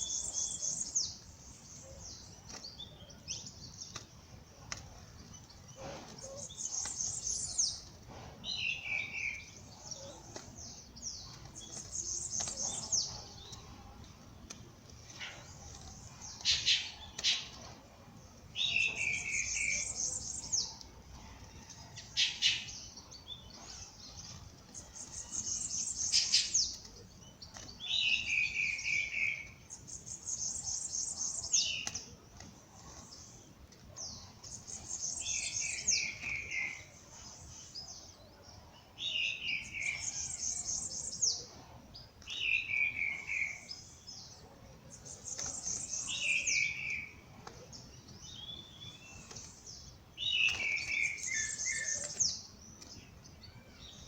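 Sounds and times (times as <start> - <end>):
songbirds singing: 0.0 - 54.0.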